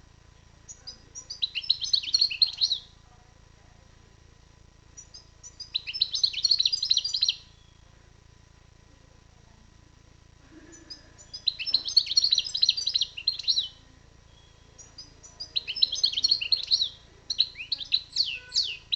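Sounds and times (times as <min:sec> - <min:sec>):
goldfinch twittering song: 0:00.7 - 0:03.0, 0:05.0 - 0:07.9, 0:10.7 - 0:18.9.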